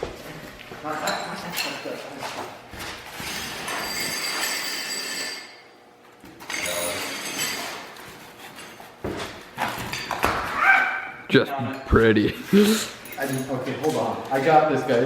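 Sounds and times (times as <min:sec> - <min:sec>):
bike tyres squeaking on floor: 0:02.9 - 0:05.4.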